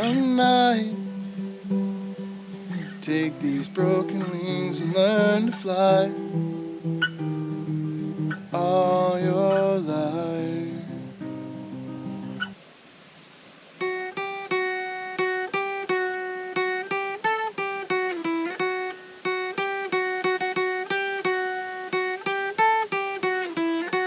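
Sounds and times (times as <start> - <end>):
acoustic guitar strumming chords: 0.0 - 12.6, 13.8 - 24.0.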